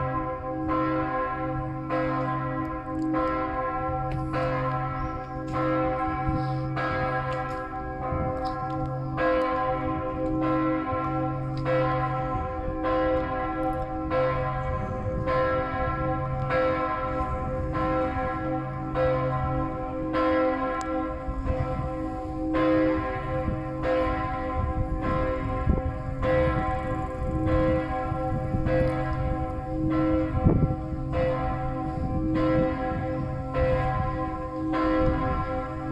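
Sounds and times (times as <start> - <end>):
church bells ringing: 0.0 - 35.9.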